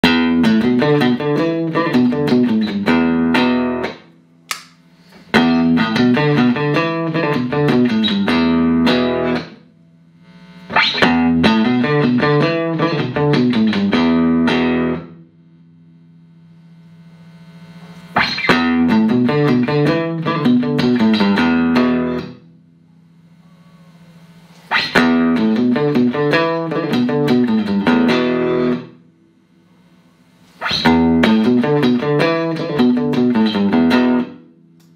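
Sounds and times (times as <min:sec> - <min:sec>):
clean electric guitar: 0:00.0 - 0:34.9.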